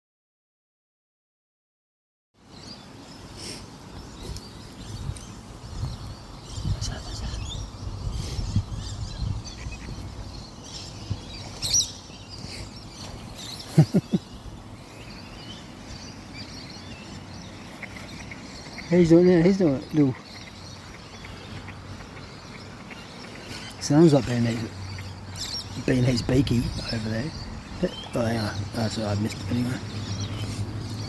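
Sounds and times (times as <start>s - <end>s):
small birds chirping: 2.4s - 31.0s.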